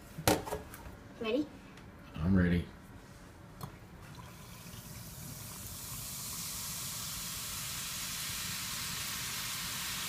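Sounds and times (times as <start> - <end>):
baking soda fizzing in vinegar: 4.2 - 10.0.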